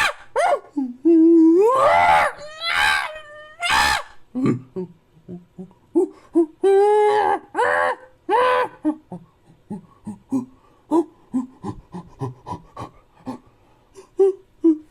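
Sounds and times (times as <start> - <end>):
cartoon gorilla calls: 0.0 - 0.8, 1.6 - 4.2, 6.0 - 9.1
cartoon gorilla panting: 9.1 - 14.5.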